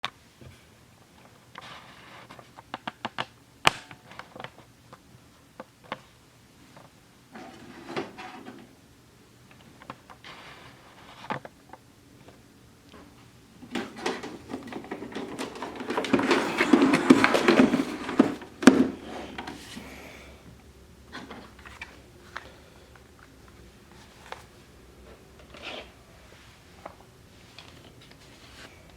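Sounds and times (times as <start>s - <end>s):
clicks and knocks: 12.9s - 19.6s
dense clattering: 13.6s - 19.7s.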